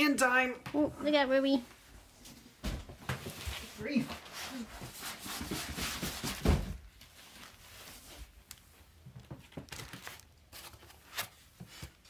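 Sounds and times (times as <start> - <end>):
rustling: 2.2 - 12.0
cardboard box thunk: 6.2 - 6.8.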